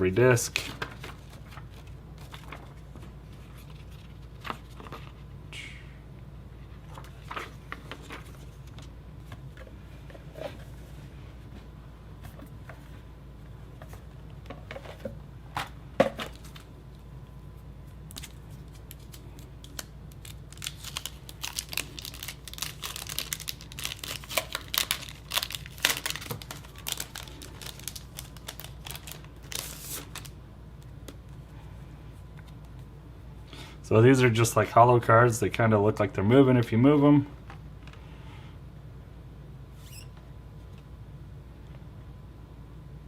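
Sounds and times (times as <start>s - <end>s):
packaging crinkling: 18.1s - 30.4s.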